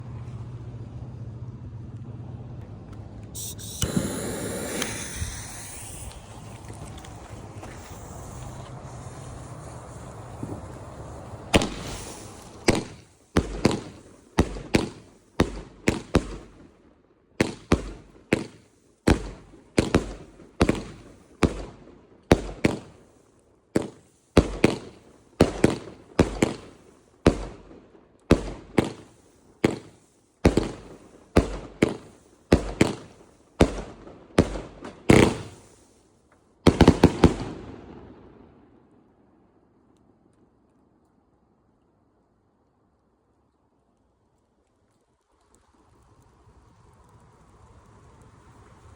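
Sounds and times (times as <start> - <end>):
firework fuse hiss: 3.3 - 13.2
firework bangs: 3.3 - 16.8, 17.4 - 23.1, 23.8 - 35.9, 36.6 - 39.1.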